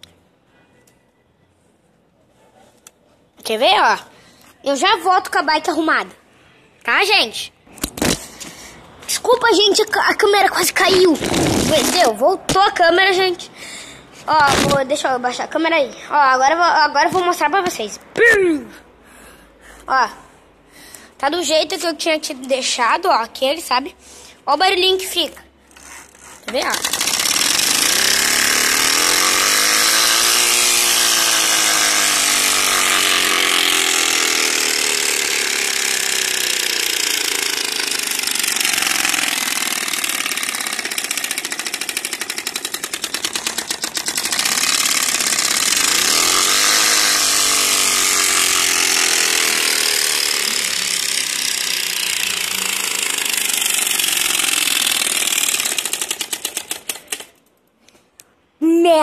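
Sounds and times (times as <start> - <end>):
bicycle spokes rattling buzz: 25.3 - 57.5.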